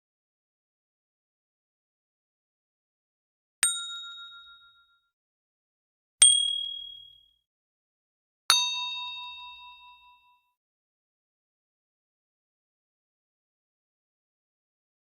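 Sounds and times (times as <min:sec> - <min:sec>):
bell-like dings: 0:03.6 - 0:05.2, 0:06.2 - 0:07.3, 0:08.5 - 0:10.5.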